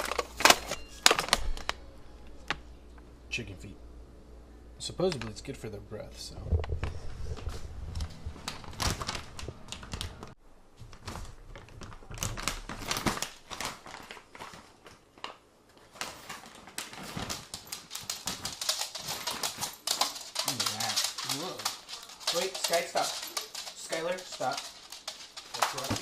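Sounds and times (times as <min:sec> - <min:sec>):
dogs crunching treats: 0:07.4 - 0:26.0.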